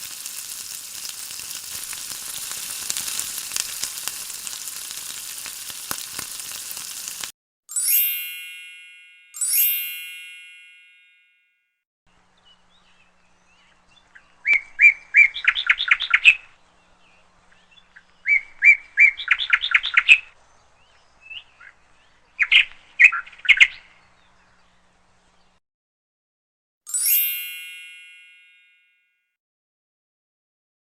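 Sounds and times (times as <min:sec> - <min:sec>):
bell-like ding: 0:07.7 - 0:11.6, 0:26.9 - 0:29.2
bird chirping: 0:12.2 - 0:25.6.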